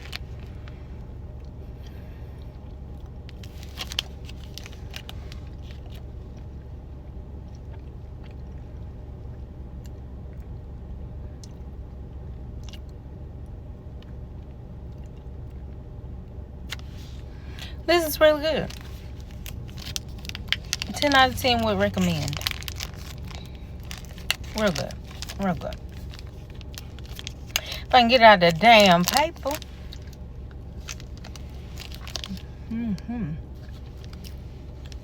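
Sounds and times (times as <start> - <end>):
low hum: 0.0 - 35.0
person chewing: 18.7 - 21.0, 22.3 - 27.9.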